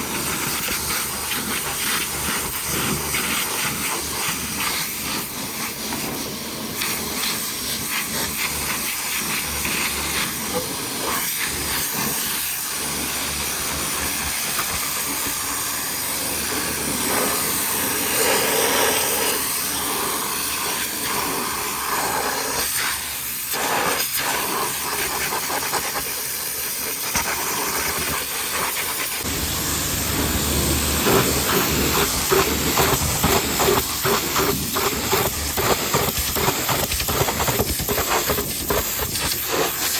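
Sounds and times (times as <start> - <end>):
pressure washer spraying water: 0.0 - 39.9
low rumble: 29.3 - 33.1.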